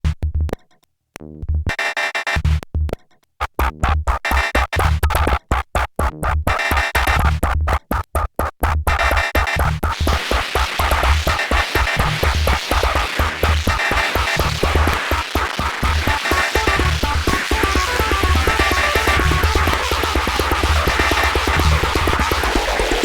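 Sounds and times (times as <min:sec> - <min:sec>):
deep bass: 0:09.6 - 0:23.0
harsh stuttering synthesizer music: 0:09.8 - 0:23.0.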